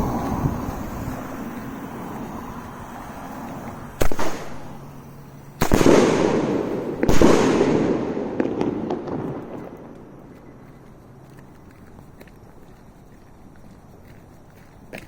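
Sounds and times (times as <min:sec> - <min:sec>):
fireworks bangs: 0:00.0 - 0:10.4.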